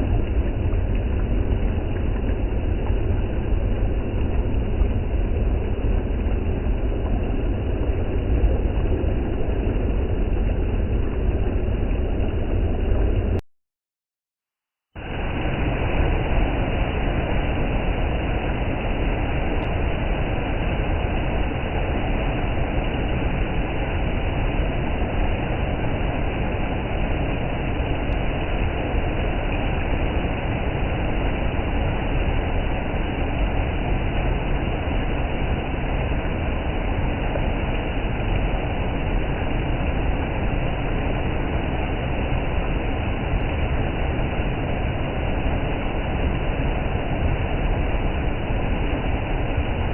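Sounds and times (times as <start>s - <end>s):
rushing river water: 15.0s - 49.9s.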